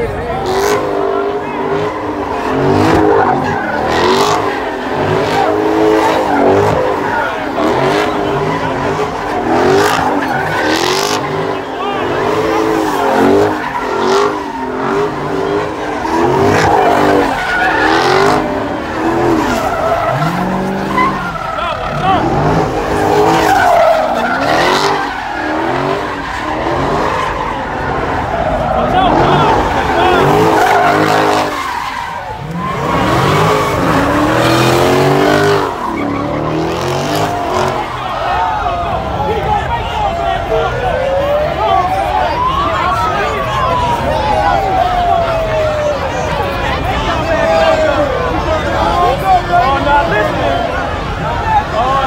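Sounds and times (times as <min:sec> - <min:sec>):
car engine revving hard: 0:00.0 - 0:40.8
tyres skidding and squealing: 0:00.0 - 0:52.0.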